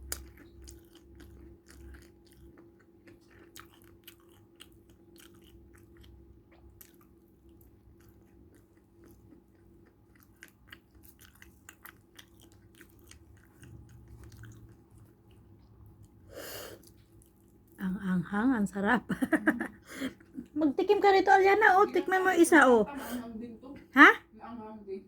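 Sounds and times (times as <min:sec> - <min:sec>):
chewing with crunches: 0:00.0 - 0:17.8.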